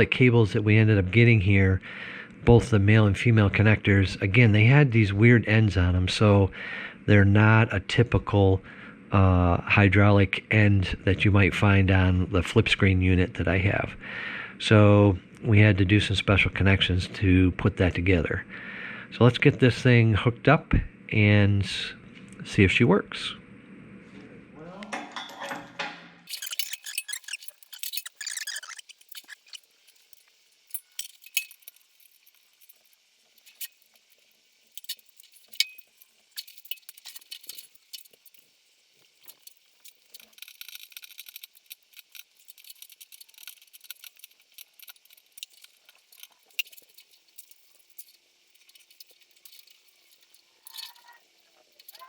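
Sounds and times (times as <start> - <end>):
faint steady hum: 0.0 - 52.0
metal fittings clinking and clicking: 26.3 - 52.0.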